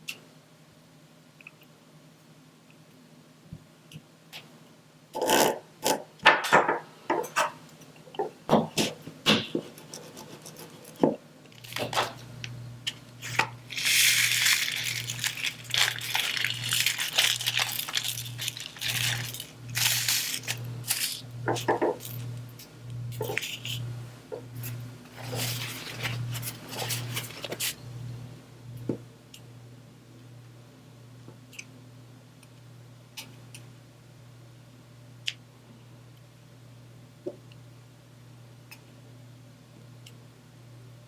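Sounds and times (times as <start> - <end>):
scraping and rustling on canvas: 25.1 - 27.8.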